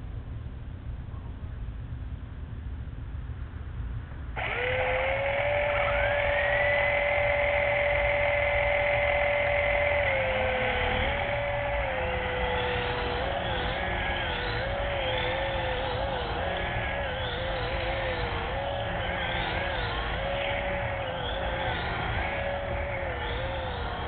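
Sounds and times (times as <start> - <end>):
toy helicopter motor whine: 4.4 - 24.0.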